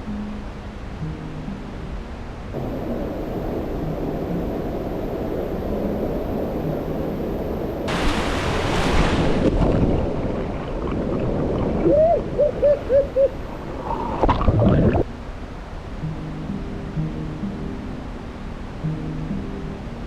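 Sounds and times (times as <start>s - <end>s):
rushing river water: 0.0s - 20.0s
splash: 7.8s - 11.9s.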